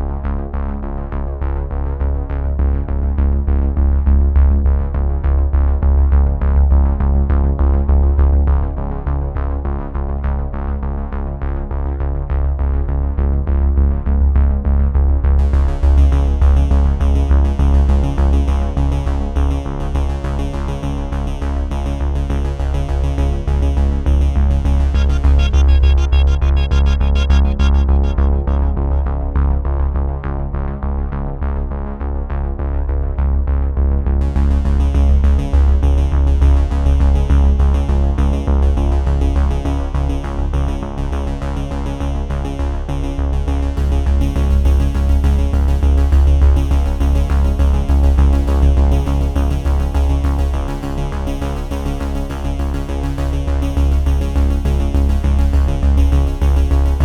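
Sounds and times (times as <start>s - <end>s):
strong steady bass: 0.0s - 57.0s
electronic synthesizer music: 24.6s - 29.8s.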